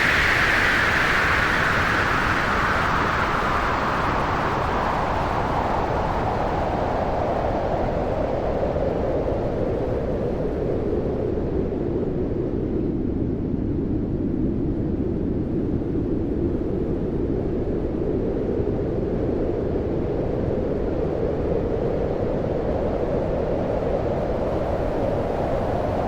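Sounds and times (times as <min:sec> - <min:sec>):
blizzard wind howling: 0:00.0 - 0:26.0.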